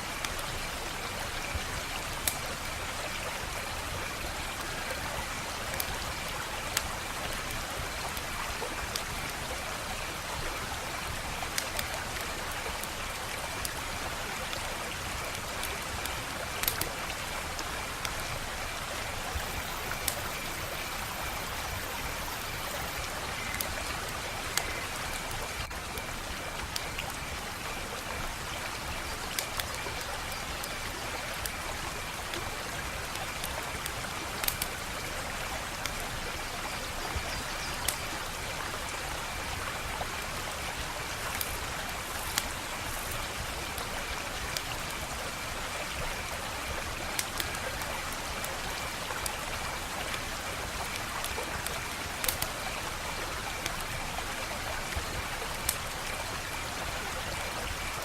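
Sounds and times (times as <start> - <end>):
fire crackling and popping: 0.2 - 3.6, 4.2 - 21.4, 29.2 - 36.1, 39.6 - 53.9.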